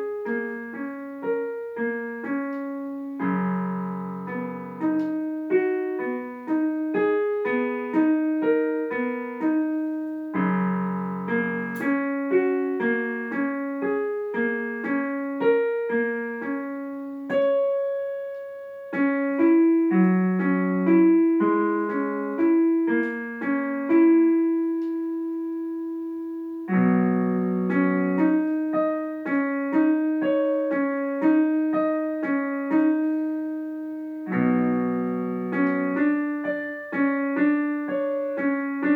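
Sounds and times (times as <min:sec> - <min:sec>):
solo piano piece: 0:00.0 - 0:38.9.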